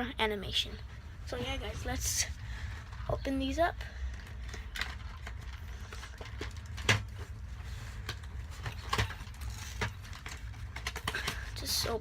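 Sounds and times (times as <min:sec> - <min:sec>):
steady low hum: 0:00.0 - 0:12.0
toy packaging being opened: 0:04.1 - 0:11.6.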